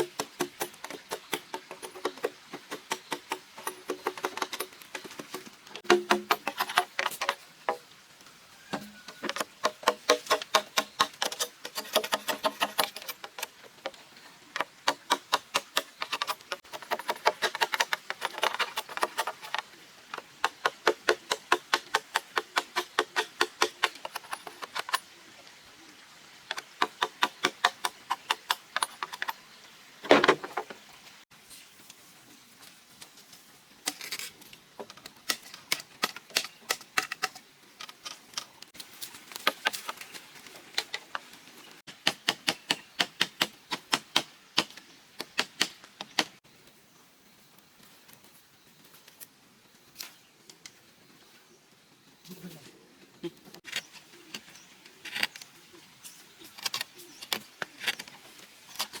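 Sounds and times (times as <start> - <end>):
blade chopping bamboo: 0.0 - 7.4, 8.8 - 13.6, 14.6 - 19.6, 20.2 - 24.9, 41.9 - 46.4.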